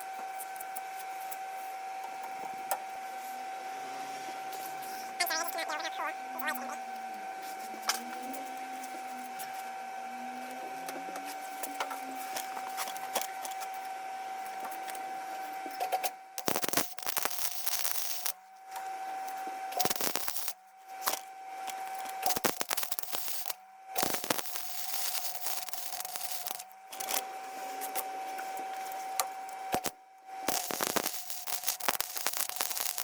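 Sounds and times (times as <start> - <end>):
steady shop hum: 1.2 - 12.8, 21.5 - 33.0
welding arc crackling: 5.2 - 6.8, 16.4 - 18.4, 19.8 - 21.1, 21.9 - 27.2, 29.7 - 33.0.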